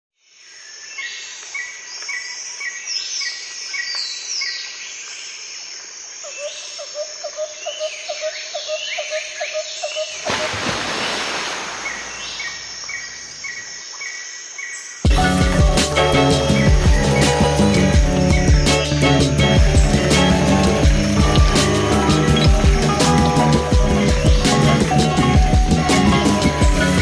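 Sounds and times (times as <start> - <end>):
birds calling: 6.3 - 27.0
high-pitched insect drone: 15.1 - 27.0.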